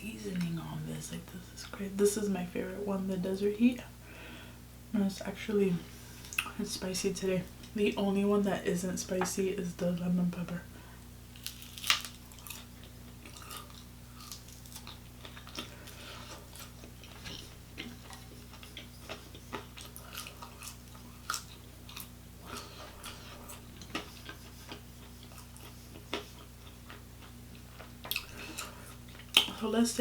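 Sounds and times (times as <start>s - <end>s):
chewing crispy chicken: 11.3s - 29.6s.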